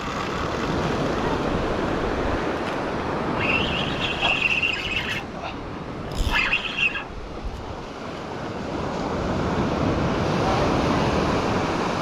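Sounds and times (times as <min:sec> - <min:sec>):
surf washing onto beach: 0:07.2 - 0:12.0.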